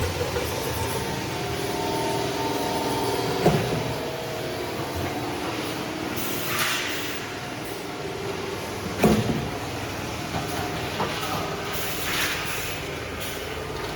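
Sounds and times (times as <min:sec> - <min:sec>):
roll forming machine whine: 0:00.0 - 0:13.9.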